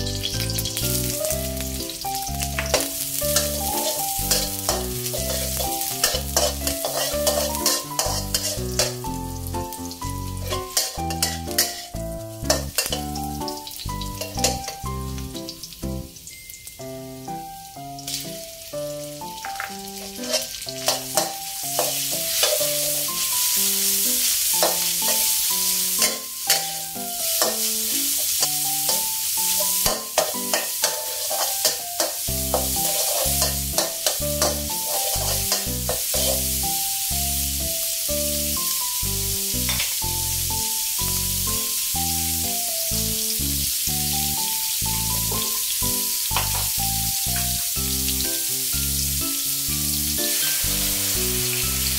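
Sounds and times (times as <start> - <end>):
background music: 0.0 - 51.9
food sizzling in a pan: 0.0 - 51.9
spatula clicking and scraping pan: 2.6 - 9.0, 10.4 - 11.9, 12.5 - 13.1, 14.2 - 14.8, 19.5 - 22.9, 24.5 - 36.6, 39.6 - 40.0.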